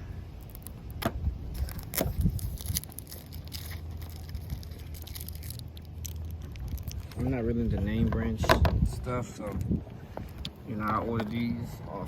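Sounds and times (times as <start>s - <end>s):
low steady hum: 0.0s - 12.0s
plastic film peeling: 0.4s - 7.2s.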